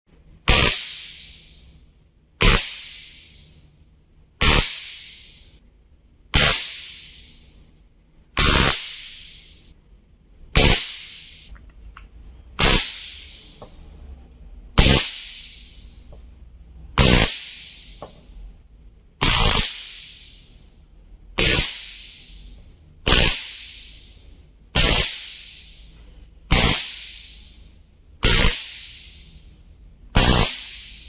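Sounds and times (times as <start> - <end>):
stun gun zapping: 0.5 - 1.7, 2.4 - 3.6, 4.4 - 5.6, 6.4 - 7.6, 8.4 - 9.7, 10.6 - 11.5, 12.6 - 13.6, 14.8 - 16.0, 17.0 - 18.0, 19.2 - 20.5, 21.4 - 22.5, 23.1 - 24.2, 24.8 - 25.9, 26.5 - 27.6, 28.2 - 29.5, 30.2 - 31.0.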